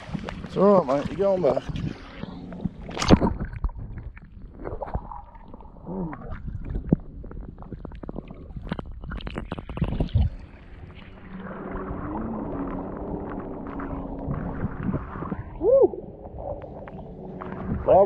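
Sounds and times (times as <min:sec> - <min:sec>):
river water sloshing and splashing: 0:00.0 - 0:06.9
low rumble: 0:00.0 - 0:18.0.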